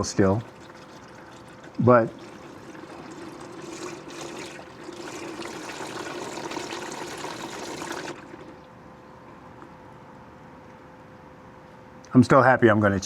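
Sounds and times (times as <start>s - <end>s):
faint background hum: 0.0s - 13.0s
oil pouring into a pan: 0.5s - 8.6s.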